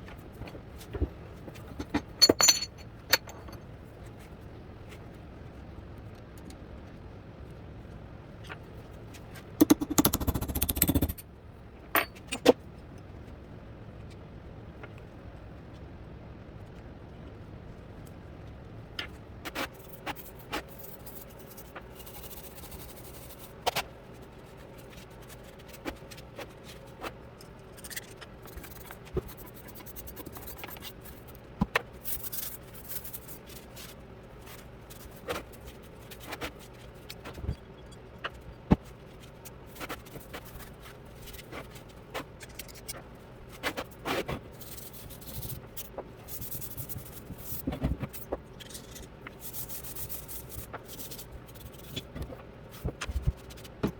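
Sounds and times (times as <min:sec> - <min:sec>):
steady background hum: 0:00.0 - 0:53.9
metal tools clicking and knocking: 0:01.8 - 0:03.6, 0:09.6 - 0:11.2.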